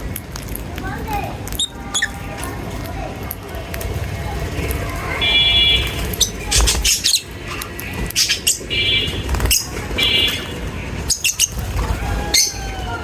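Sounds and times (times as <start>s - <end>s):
lovebirds squawking and chirping: 1.5s - 2.4s, 5.2s - 13.0s
buzzy bird notes: 4.0s - 12.8s.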